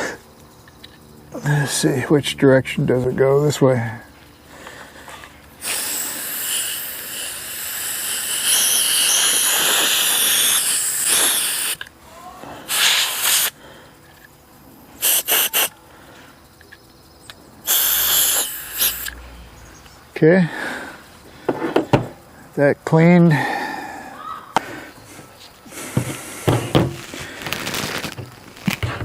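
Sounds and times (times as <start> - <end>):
air blower hissing blasts: 17.6 - 19.2, 25.7 - 29.0.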